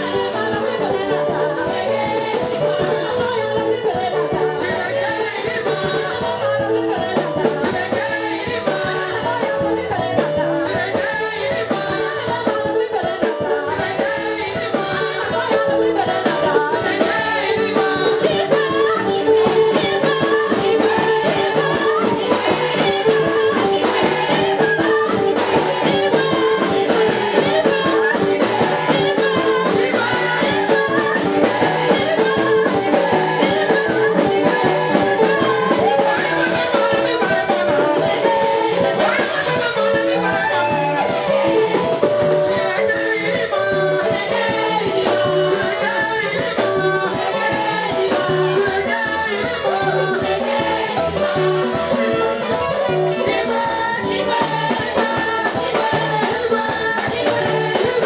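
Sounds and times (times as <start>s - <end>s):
percussive beat: 0.0s - 58.0s
worship singing with instruments: 0.0s - 58.0s.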